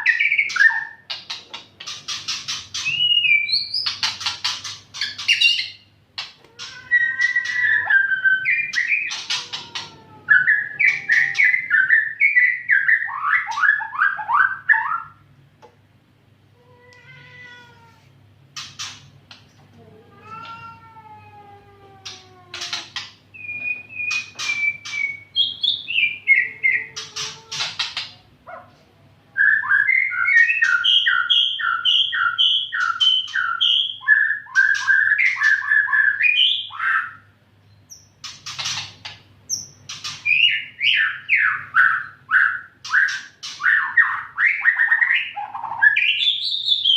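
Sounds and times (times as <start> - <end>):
bird singing whistled phrases: 2.8 - 3.9, 23.4 - 26.9, 29.4 - 37.2.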